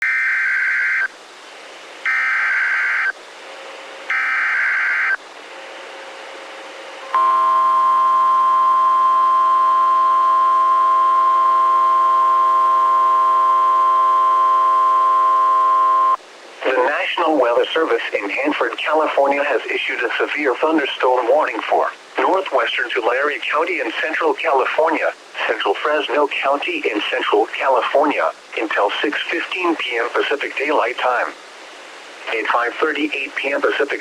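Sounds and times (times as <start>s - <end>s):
steady warning alarm tone: 2.0s - 3.2s, 4.1s - 5.2s, 7.1s - 16.2s
warbling digital data screech: 4.1s - 5.2s
faint radio hiss: 8.8s - 34.0s.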